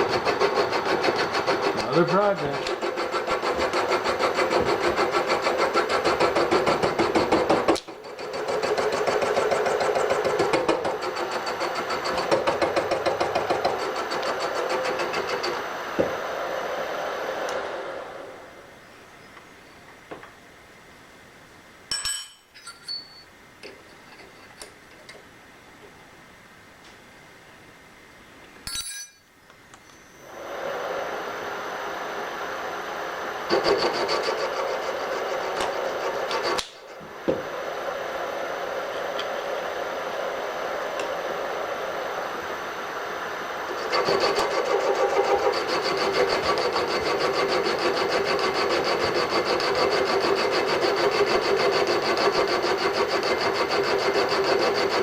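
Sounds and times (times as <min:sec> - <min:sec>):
metalworking machine tool running: 0:00.0 - 0:18.4, 0:30.2 - 0:55.0.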